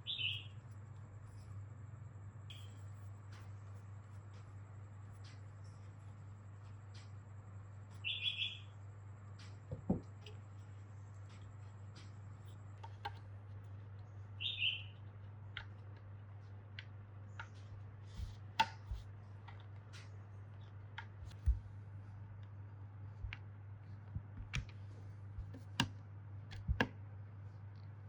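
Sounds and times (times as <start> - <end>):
bird chirps: 0.0 - 0.6, 2.5 - 2.8, 8.0 - 8.8, 14.0 - 15.1
steady low hum: 0.0 - 28.0.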